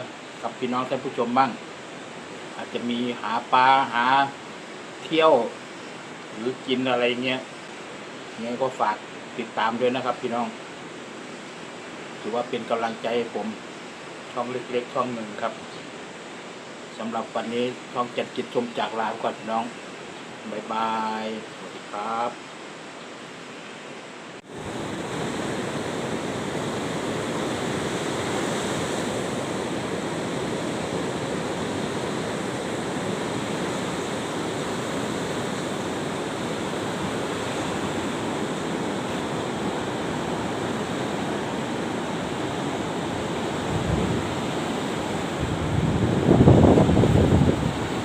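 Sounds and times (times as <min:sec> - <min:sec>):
sea waves rushing: 0:00.0 - 0:22.9, 0:24.4 - 0:48.0
wind buffeting microphone: 0:24.5 - 0:48.0.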